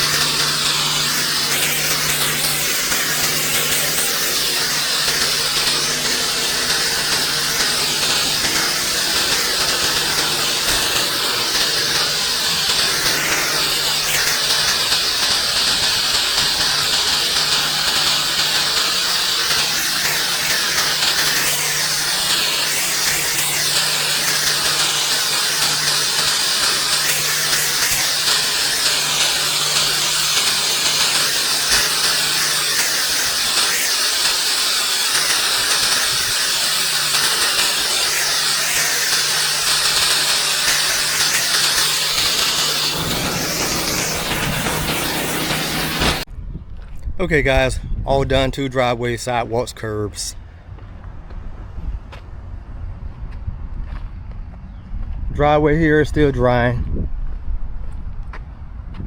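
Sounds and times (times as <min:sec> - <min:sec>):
pressure washer water hiss: 0:00.0 - 0:46.3
low machine hum: 0:00.0 - 0:46.7.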